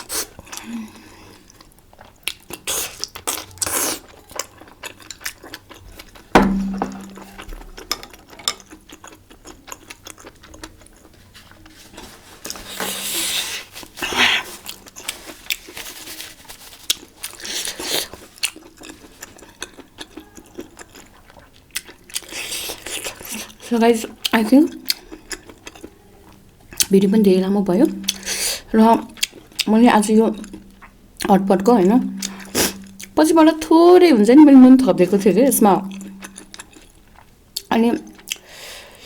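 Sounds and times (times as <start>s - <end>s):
chewing and biting: 1.5s - 6.6s, 7.2s - 11.8s, 16.7s - 26.9s, 29.1s - 29.7s, 35.9s - 38.5s
sharp knock with short ring: 6.4s - 7.3s.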